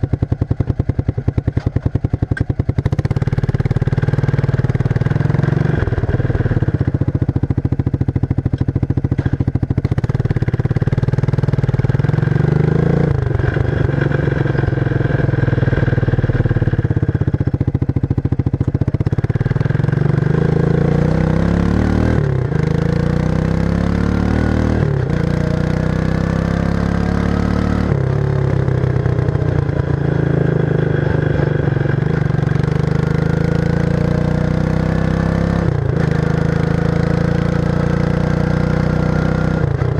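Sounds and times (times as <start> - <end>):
atv engine loud exhaust: 0.0 - 39.9.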